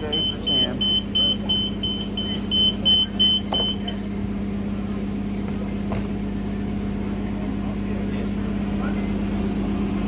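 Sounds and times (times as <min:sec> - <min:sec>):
bus warning beeper: 0:00.0 - 0:04.1
bus humming: 0:00.0 - 0:10.0.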